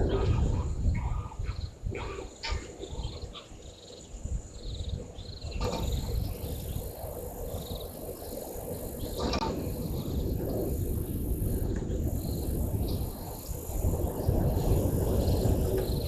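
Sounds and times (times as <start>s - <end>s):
wind rumble on microphone: 0.0s - 16.0s.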